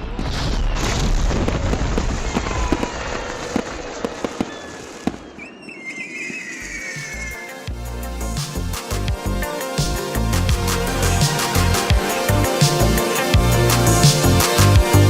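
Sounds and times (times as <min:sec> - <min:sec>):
fireworks bursting and crackling: 0:00.0 - 0:07.7
high whistling tone: 0:04.4 - 0:07.8.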